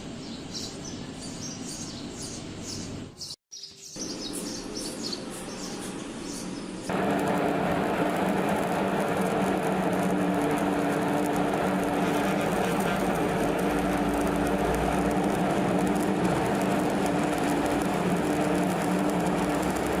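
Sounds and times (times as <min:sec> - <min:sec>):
birds chirping: 0:00.1 - 0:06.9
steady background noise: 0:03.9 - 0:20.0
machine hum with low droning: 0:04.2 - 0:20.0.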